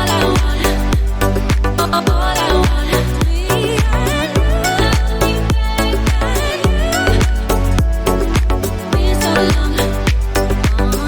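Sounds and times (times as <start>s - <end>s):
dance music with kick drum: 0.0s - 11.0s.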